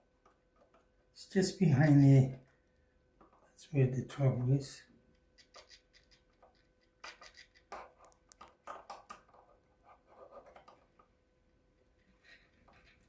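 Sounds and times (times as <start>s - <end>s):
small clicks and scratches of a tool: 0.2s - 1.0s, 2.4s - 3.6s, 5.0s - 11.2s, 11.8s - 13.0s.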